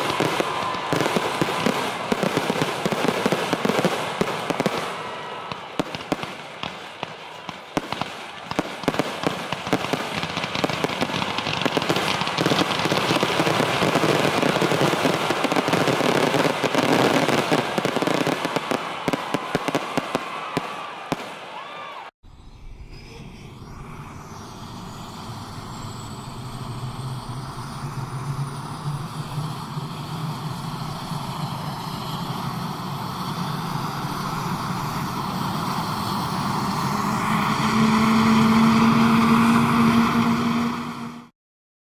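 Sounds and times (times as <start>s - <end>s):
engine noise: 0.0s - 20.0s, 22.3s - 41.3s
fireworks crackling: 0.0s - 22.1s, 23.6s - 41.0s
rising hum: 22.2s - 41.3s.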